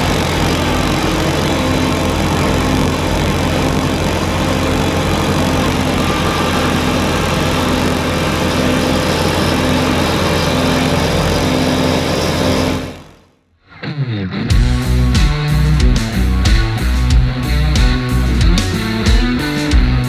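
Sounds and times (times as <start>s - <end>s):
diesel tractor engine running: 0.0s - 13.3s, 14.5s - 20.0s
snowblower rushing noise: 0.0s - 13.3s, 14.6s - 20.0s.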